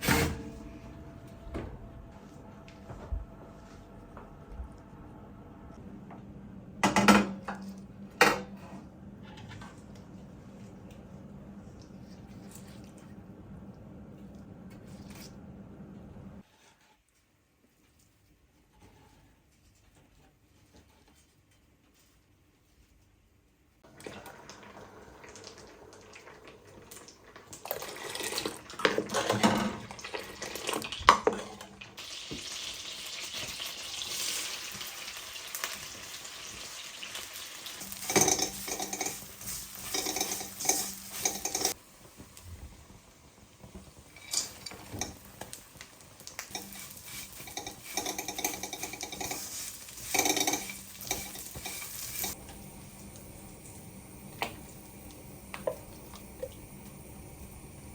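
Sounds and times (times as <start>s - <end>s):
food sizzling: 24.2s - 57.9s
metal spoon scraping a pan: 37.8s - 41.8s, 46.5s - 52.4s.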